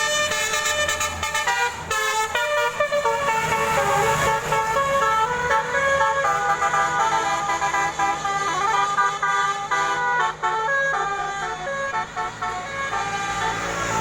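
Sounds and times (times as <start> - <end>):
multi-tone bus horn playing a tune: 0.0 - 14.0.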